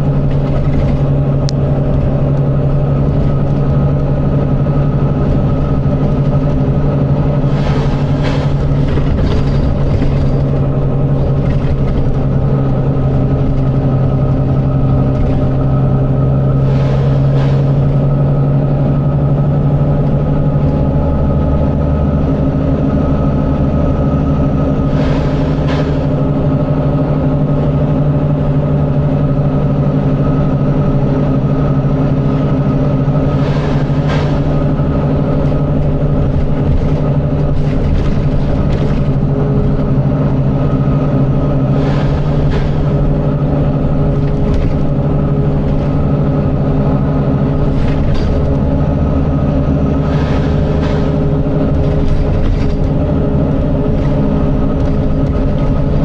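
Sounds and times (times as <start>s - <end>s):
diesel bus engine running: 0.0s - 56.0s
short air hisses: 24.8s - 26.3s.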